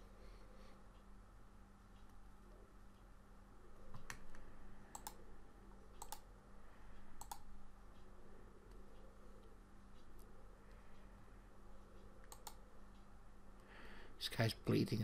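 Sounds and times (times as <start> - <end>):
faint electrical hum: 0.0 - 15.0
computer mouse clicking: 3.9 - 5.2, 6.0 - 6.3, 7.2 - 7.5, 12.0 - 13.1.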